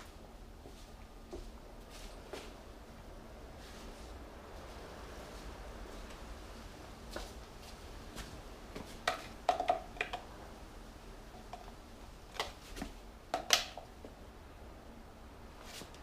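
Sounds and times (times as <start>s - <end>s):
plastic and metal clicks and knocks: 9.1s - 10.2s.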